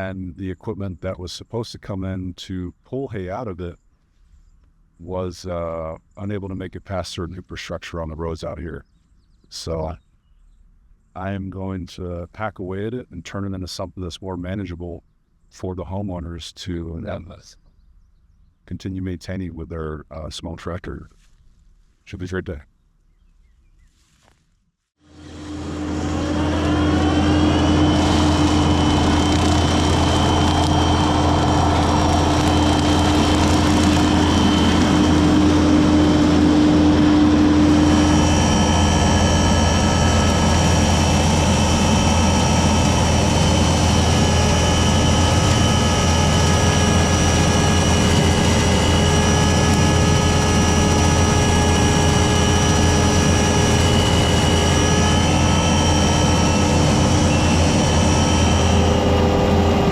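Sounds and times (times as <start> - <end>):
diesel engine and brush cutter running: 25.0 - 59.9.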